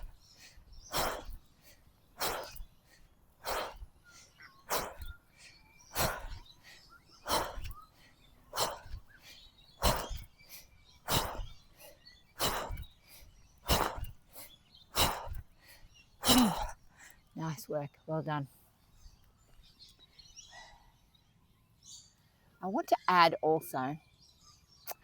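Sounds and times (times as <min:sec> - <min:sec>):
person breathing hard: 0:00.0 - 0:17.3.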